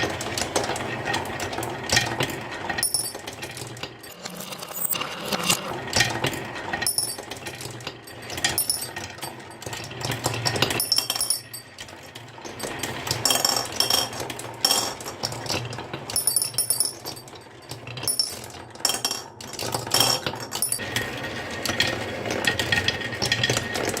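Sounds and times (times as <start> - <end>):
marbles rolling down a track: 0.0 - 24.0
marbles clinking: 4.0 - 5.7.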